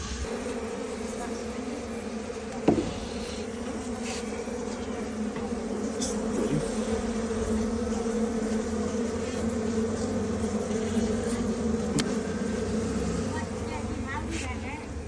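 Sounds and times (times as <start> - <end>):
honeybees buzzing: 0.0 - 15.0
sharp knock: 2.6 - 3.1.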